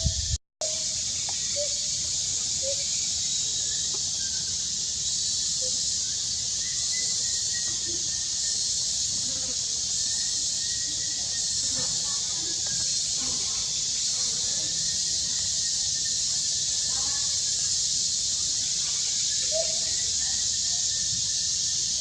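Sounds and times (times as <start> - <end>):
high-pitched hiss: 0.0 - 22.0.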